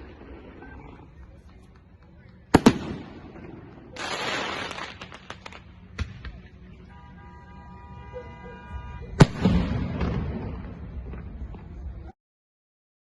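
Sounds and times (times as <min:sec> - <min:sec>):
rumbling crackling echo: 0:00.0 - 0:06.4.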